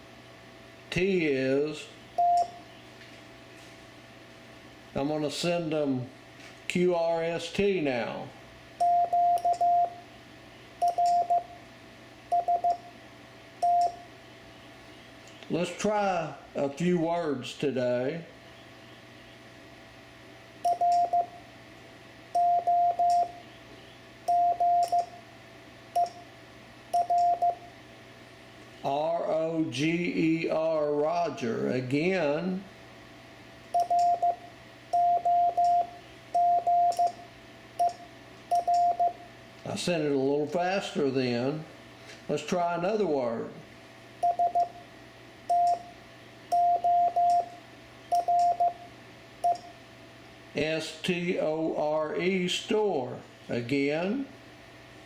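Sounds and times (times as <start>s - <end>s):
morse code tone: 8.8s - 10.0s, 10.8s - 11.6s, 12.3s - 12.9s, 13.6s - 14.0s, 20.6s - 21.4s, 22.4s - 23.6s, 24.3s - 25.2s, 27.0s - 27.7s, 33.8s - 37.2s, 37.8s - 39.2s, 44.2s - 44.9s, 45.5s - 45.9s, 46.5s - 49.6s.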